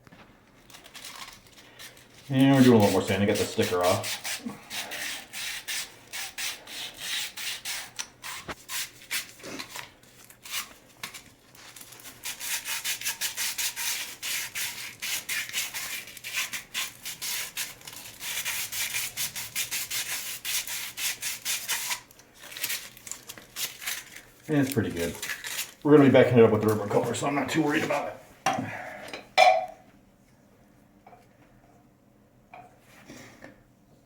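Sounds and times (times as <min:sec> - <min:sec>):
sandpaper rubbing by hand: 0:02.3 - 0:09.4, 0:12.2 - 0:22.0.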